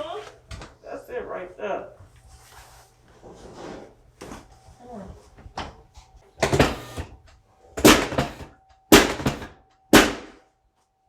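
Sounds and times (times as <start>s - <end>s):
heavy thumps with ring-out: 7.8s - 10.4s.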